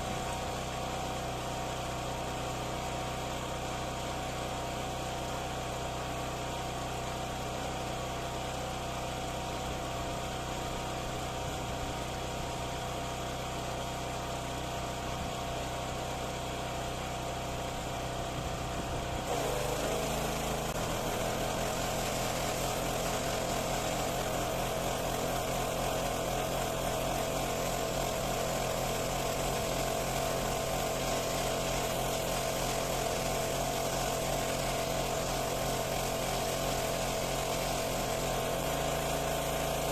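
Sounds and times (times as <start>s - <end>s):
pressure washer running: 0.0s - 39.9s.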